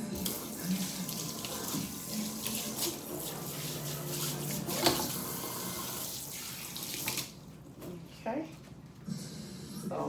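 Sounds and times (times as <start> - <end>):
faucet running into sink: 0.0 - 7.4.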